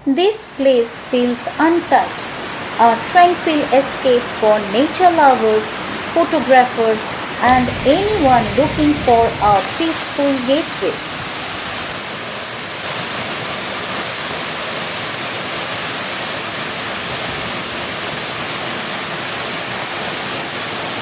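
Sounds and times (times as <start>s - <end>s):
waterfall rushing: 7.5s - 9.9s.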